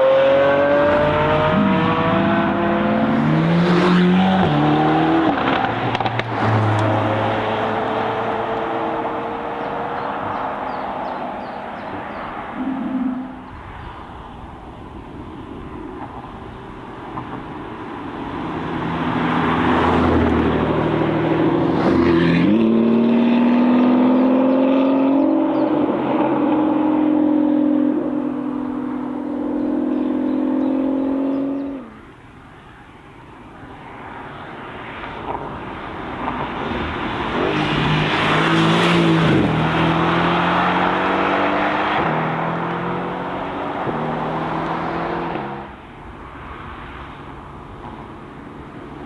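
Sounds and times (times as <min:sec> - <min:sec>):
car engine accelerating hard: 0:00.0 - 0:13.5, 0:18.4 - 0:31.8, 0:36.5 - 0:45.8
another car engine: 0:00.0 - 0:14.3, 0:35.2 - 0:49.0.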